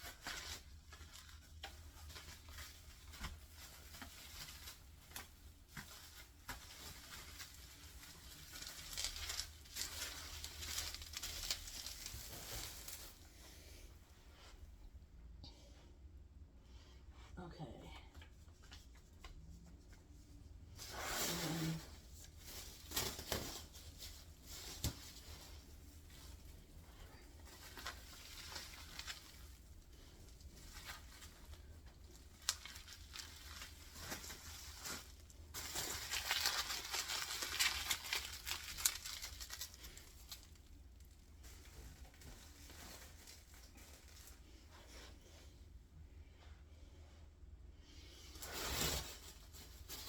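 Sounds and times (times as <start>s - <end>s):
wrapping material crinkling: 0.0s - 13.5s, 20.7s - 45.4s, 48.3s - 50.0s.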